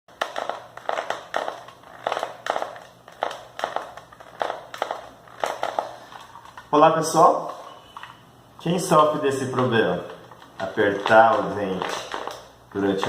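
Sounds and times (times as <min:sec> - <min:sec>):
teeth grinding: 0:00.1 - 0:06.6.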